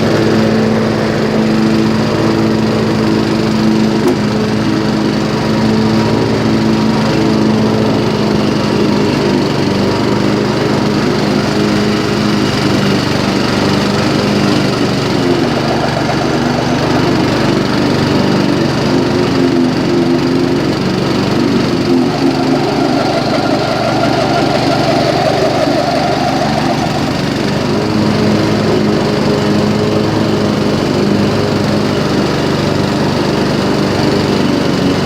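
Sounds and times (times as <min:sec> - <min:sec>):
small engine running: 0:00.0 - 0:35.0
belt squealing: 0:21.3 - 0:27.8.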